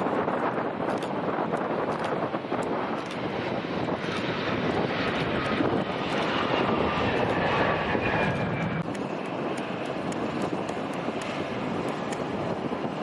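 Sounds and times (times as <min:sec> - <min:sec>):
airliner passing: 0:00.0 - 0:13.0
engine whine sliding down: 0:06.2 - 0:08.9.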